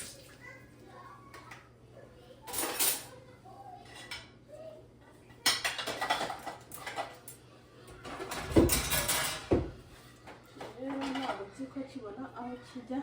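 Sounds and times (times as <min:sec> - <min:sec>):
dishes and cutlery clattering: 0:02.5 - 0:03.2, 0:03.8 - 0:04.4, 0:05.4 - 0:11.6
knocks and thumps: 0:08.2 - 0:09.8.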